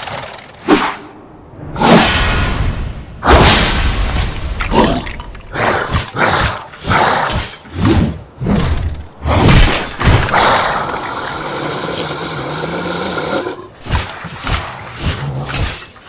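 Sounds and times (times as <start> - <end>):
heavy thuds and breaking impacts: 1.9 - 5.3
creature growling and roaring: 4.6 - 15.9.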